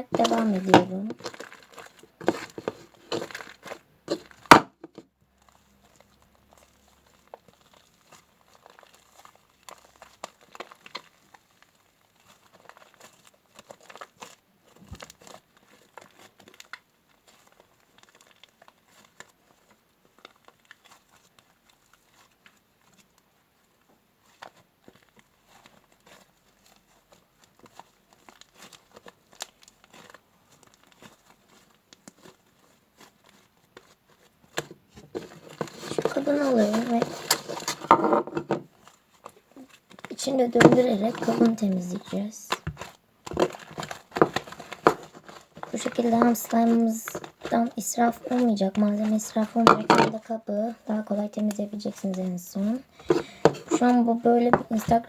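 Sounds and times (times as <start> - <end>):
slime crackling while kneaded: 0.0 - 4.6, 5.3 - 55.0.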